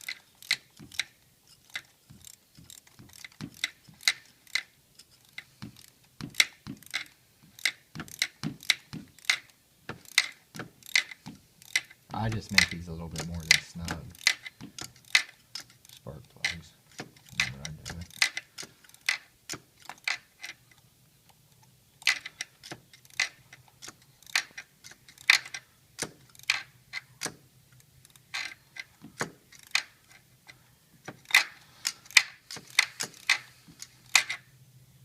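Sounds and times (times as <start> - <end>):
ratchet wrench clicking: 0.0 - 20.7, 22.0 - 34.4
faint low hum: 11.4 - 18.2.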